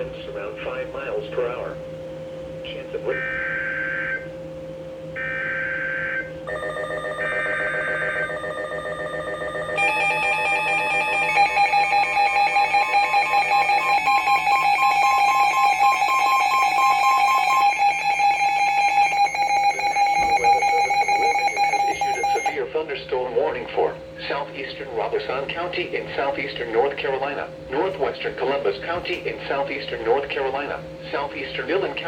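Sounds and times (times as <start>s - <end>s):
multi-tone alarm beeping: 3.1s - 4.4s, 5.2s - 22.6s
digital data tone bursts: 7.1s - 22.6s.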